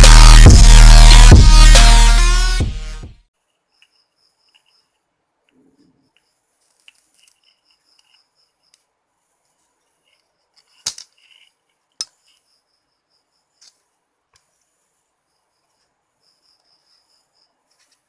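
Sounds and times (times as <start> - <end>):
insects chirping: 3.4 - 5.1, 5.9 - 9.0, 10.0 - 18.0.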